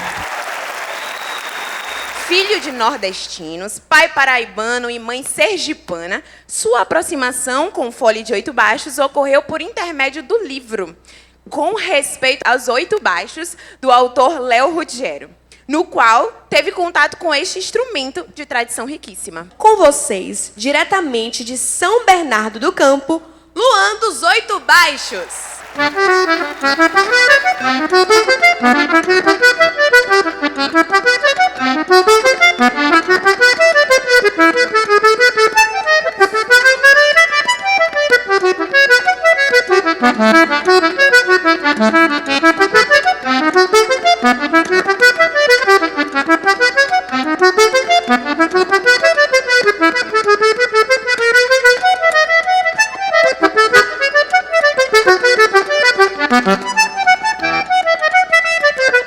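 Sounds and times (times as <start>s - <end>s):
button accordion playing: 0.0s - 3.5s, 24.1s - 59.0s.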